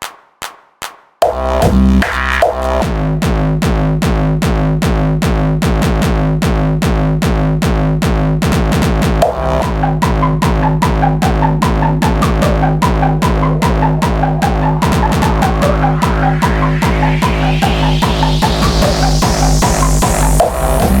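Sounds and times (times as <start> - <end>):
low synth bass: 1.6 - 21.0
kick drum: 2.8 - 21.0
high synth melody: 9.2 - 21.0.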